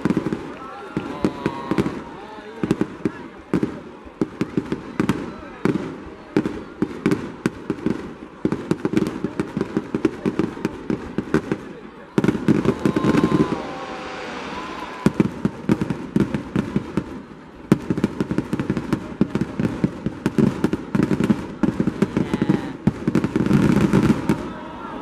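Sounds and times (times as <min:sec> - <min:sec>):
fireworks bangs and crackling: 0:00.0 - 0:25.0.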